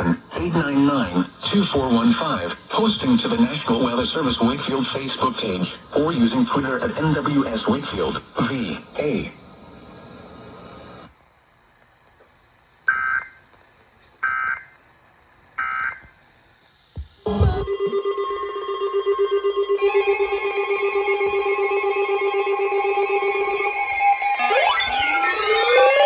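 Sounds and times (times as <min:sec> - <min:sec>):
higher electronic tone: 0:17.3 - 0:26.0
warbling alert data bursts: 0:23.0 - 0:26.0.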